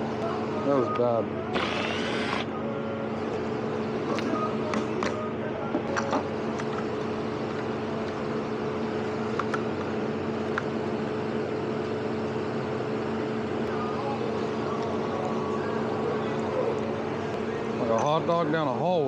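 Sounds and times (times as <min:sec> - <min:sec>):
machine humming: 0:00.0 - 0:04.7.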